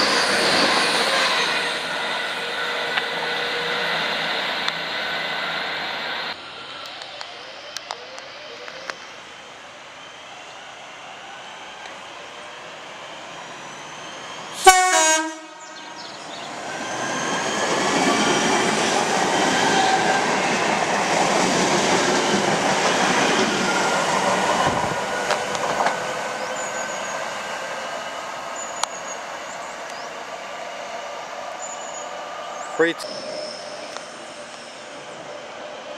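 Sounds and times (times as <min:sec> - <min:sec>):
train wheels rumbling on rail: 0:00.0 - 0:07.2, 0:11.8 - 0:35.9
train horn blast: 0:14.6 - 0:16.1.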